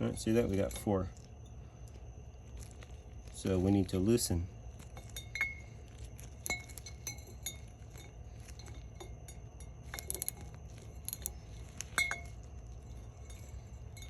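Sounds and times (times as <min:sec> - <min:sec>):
low steady hum: 0:00.0 - 0:14.0
hard objects clinking together: 0:04.8 - 0:14.0.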